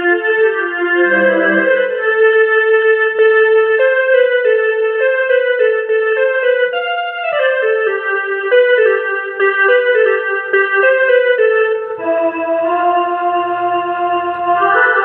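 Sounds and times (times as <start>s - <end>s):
electronic keyboard melody: 0.8s - 3.4s.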